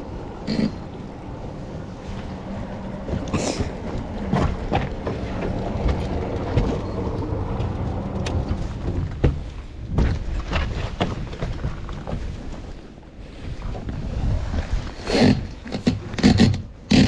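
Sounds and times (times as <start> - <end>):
boat engine running: 0.0 - 17.0
wind on microphone: 13.3 - 16.3.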